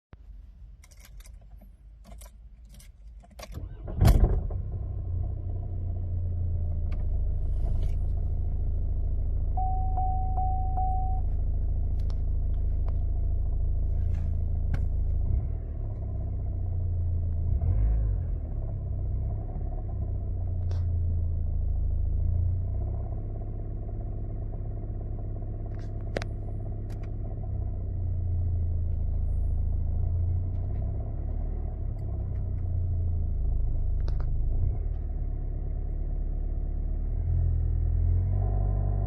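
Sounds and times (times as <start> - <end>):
diesel engine idling with rattle: 2.8 - 37.9
short beep: 9.6 - 11.4.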